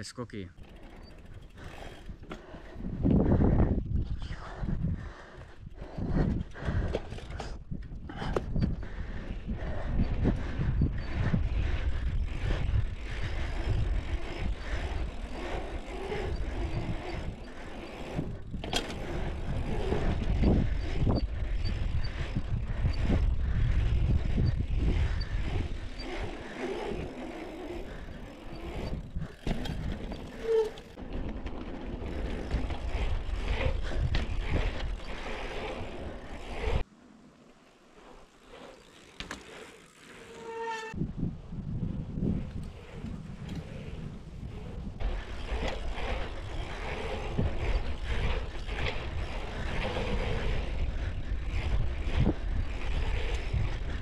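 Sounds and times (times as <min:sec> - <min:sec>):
wind buffeting microphone: 0:01.0 - 0:36.8, 0:40.9 - 0:54.0
bike knocks and rattles: 0:10.1 - 0:23.2, 0:23.8 - 0:35.1, 0:39.0 - 0:39.8.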